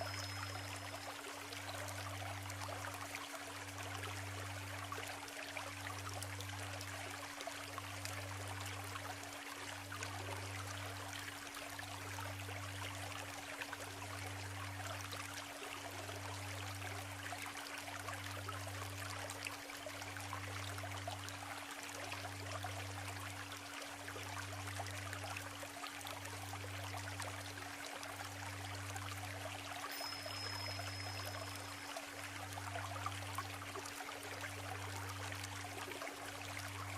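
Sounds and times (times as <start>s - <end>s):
steady low tone: 0.0s - 7.1s, 26.2s - 36.9s
stream babbling over stones: 0.0s - 36.9s.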